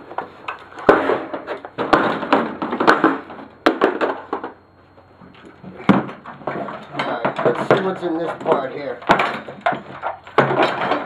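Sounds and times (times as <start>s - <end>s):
metal parts knocking and clattering: 5.9s - 11.0s.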